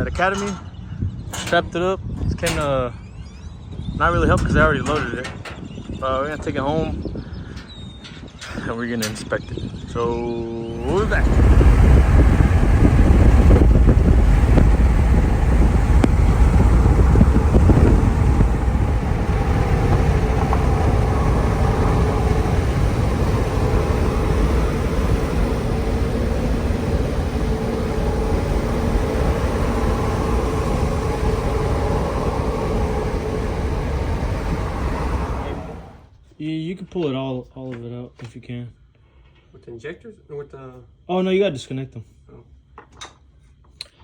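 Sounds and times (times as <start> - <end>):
wind buffeting microphone: 0.0 - 36.1
vehicle engine and road noise: 10.7 - 36.1.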